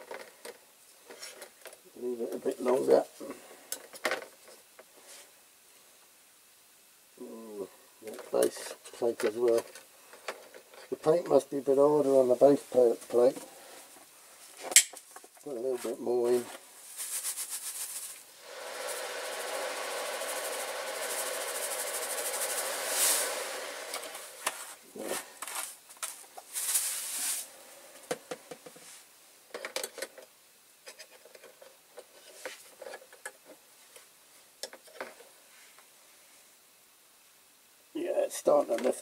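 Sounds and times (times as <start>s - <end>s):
rattling hiss of pouring granules: 15.5s - 29.2s.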